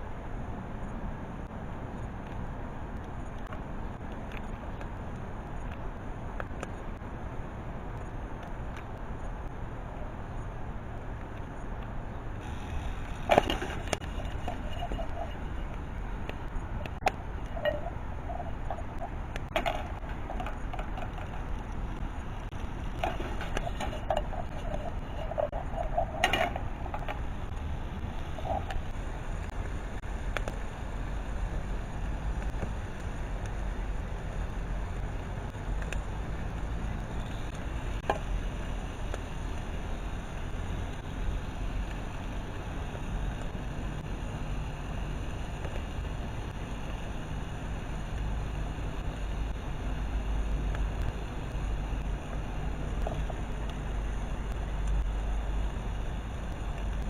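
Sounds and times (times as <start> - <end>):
low wind rumble: 0.0 - 57.0
faint clicks: 11.2 - 30.6.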